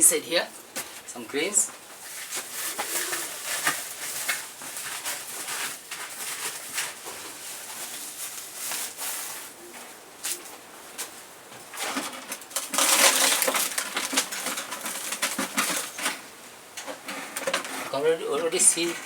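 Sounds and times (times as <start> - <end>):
grain pouring into plastic feeder: 12.6 - 16.0.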